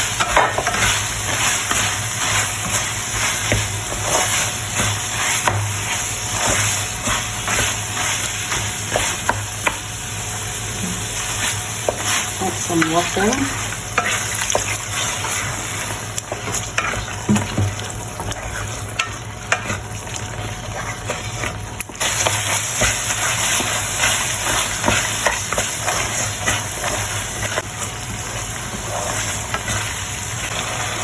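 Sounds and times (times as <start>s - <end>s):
sauce sizzling in a pan: 0.0s - 31.0s
spoon scraping a pan: 0.2s - 9.4s, 13.9s - 27.6s.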